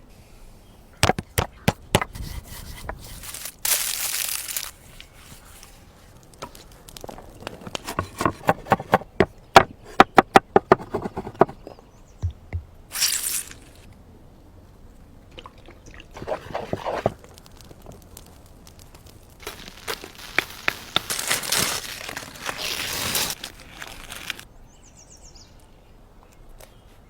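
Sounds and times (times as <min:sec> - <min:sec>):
hissing rustling scrapes: 0:02.2 - 0:08.9, 0:16.1 - 0:18.4, 0:19.4 - 0:24.4.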